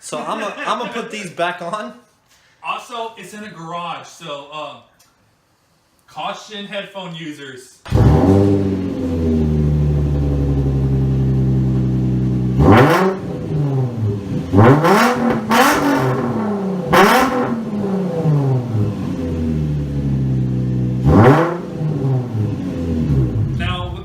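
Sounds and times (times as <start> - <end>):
car exhaust idling loudly: 7.9 - 24.0
engine revving throttle blips: 7.9 - 24.0.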